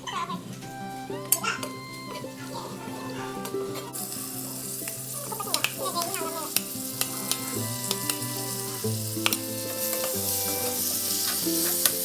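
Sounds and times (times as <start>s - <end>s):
instrumental background music: 0.0s - 12.0s
food sizzling in a pan: 2.4s - 12.0s
utensil clicking against pan: 4.0s - 12.0s.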